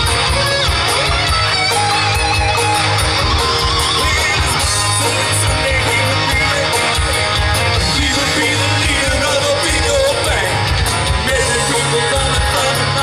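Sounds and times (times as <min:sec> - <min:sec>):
live rock band playing: 0:00.0 - 0:13.0
person singing: 0:07.8 - 0:13.0.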